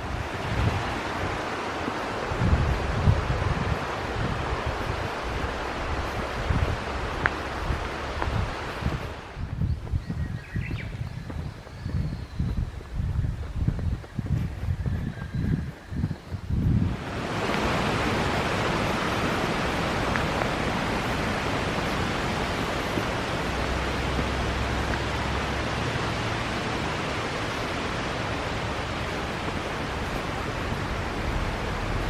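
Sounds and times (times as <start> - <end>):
flowing water rushing: 0.0 - 9.4, 16.8 - 32.0.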